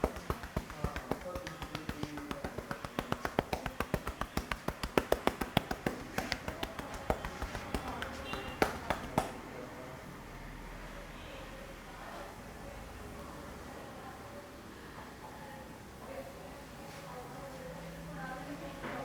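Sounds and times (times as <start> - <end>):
hands tapping on head: 0.0 - 9.5.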